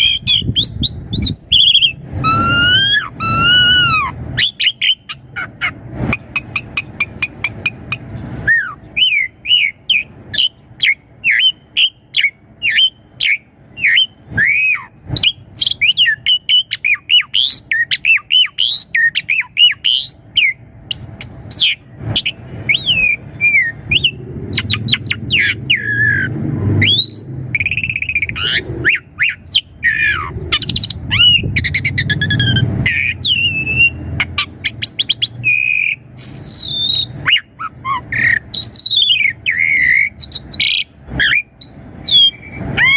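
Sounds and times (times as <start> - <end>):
starling singing: 0.0 - 42.9.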